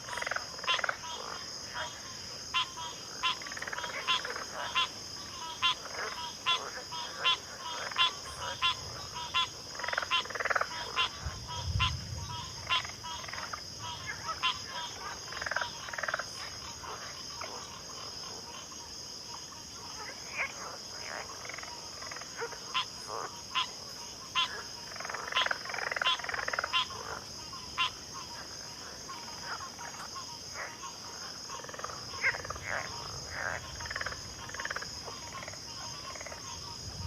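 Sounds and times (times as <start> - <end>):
frogs calling: 0.0 - 37.0
insect drone: 0.0 - 37.0
low rumble: 11.2 - 12.7.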